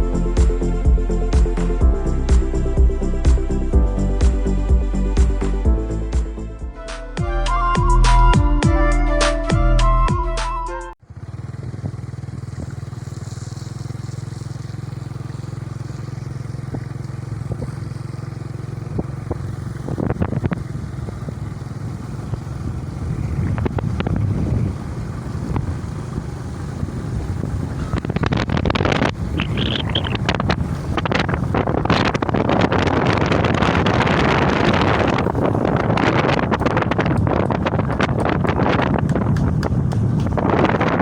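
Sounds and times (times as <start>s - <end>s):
music: 0.0s - 11.0s
engine rattling: 11.0s - 41.0s
small engine running: 11.0s - 41.0s.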